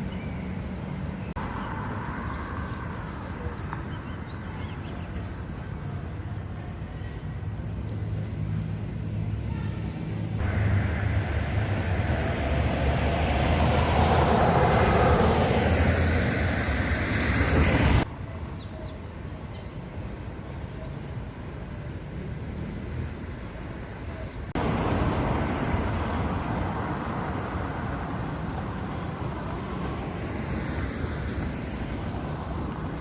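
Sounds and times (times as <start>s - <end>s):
traffic rumble: 0.0s - 33.0s.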